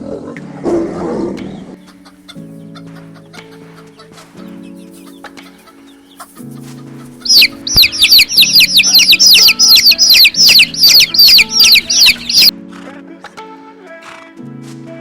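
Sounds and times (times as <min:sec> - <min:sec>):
background music: 0:00.0 - 0:15.0
bird chirping rapidly: 0:07.2 - 0:12.5.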